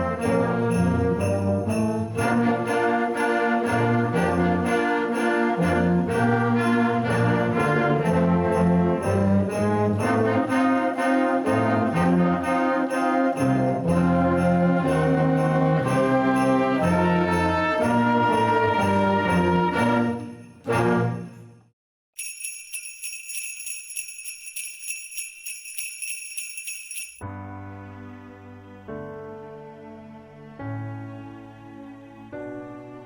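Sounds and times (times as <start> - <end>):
brass instruments playing tune: 0.0 - 21.4
sleigh bells shaken: 0.0 - 21.6, 22.2 - 27.2.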